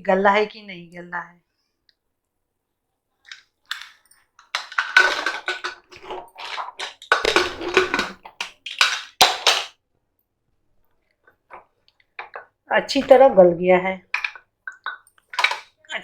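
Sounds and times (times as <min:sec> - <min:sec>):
metal clattering and scraping: 0:04.4 - 0:09.6.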